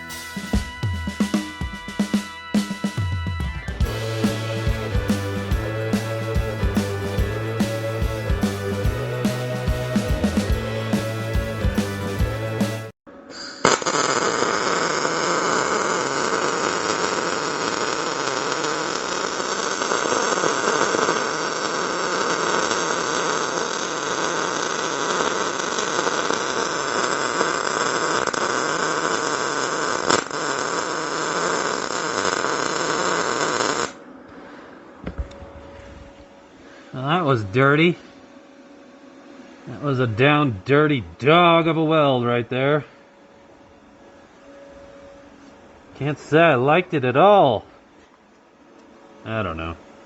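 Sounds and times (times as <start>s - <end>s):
welding arc crackling hiss: 0.0s - 1.6s, 3.8s - 34.1s.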